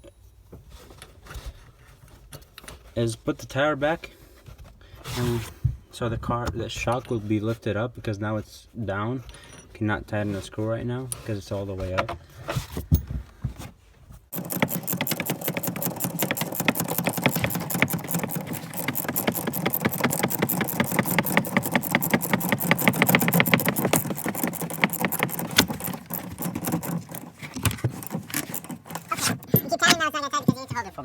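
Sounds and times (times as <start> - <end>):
ratchet wrench clicking: 14.3 - 30.0.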